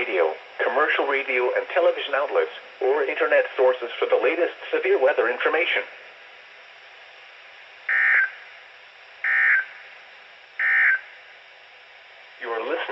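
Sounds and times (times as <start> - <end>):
faint radio hiss: 0.0 - 12.9
screeching digital data bursts: 7.9 - 8.5, 9.2 - 9.8, 10.6 - 11.2.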